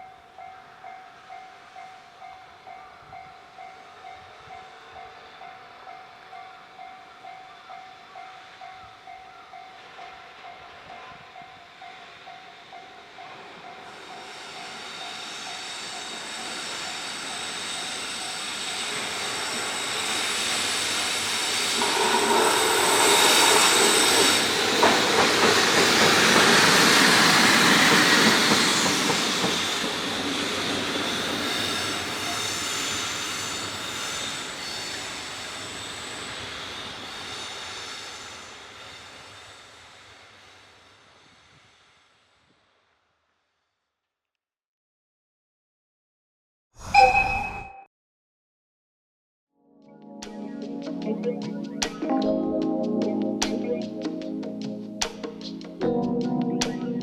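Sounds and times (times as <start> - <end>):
electric train passing: 0.0 - 42.8, 50.0 - 57.0
high wheel squeal: 13.9 - 39.8.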